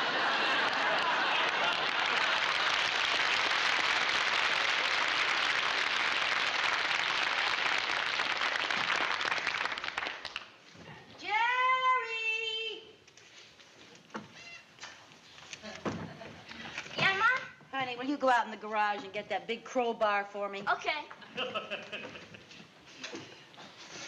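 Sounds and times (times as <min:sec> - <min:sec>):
studio audience applause: 0:00.0 - 0:10.6.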